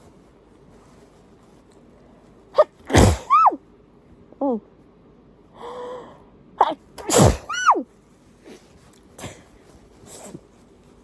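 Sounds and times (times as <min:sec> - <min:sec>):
person sneezing: 0:02.6 - 0:03.6, 0:06.6 - 0:07.8, 0:09.2 - 0:09.5.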